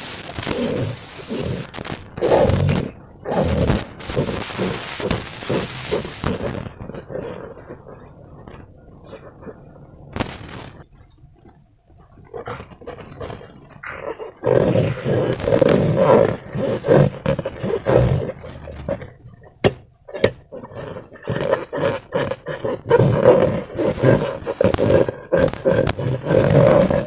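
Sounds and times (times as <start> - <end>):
sharp clicks: 0.0 - 6.8, 23.8 - 27.0.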